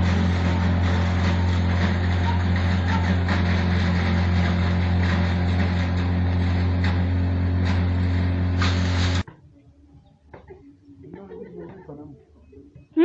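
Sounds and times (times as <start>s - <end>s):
electric motor deep hum: 0.0s - 9.2s
grinder grinding rush: 0.0s - 9.2s.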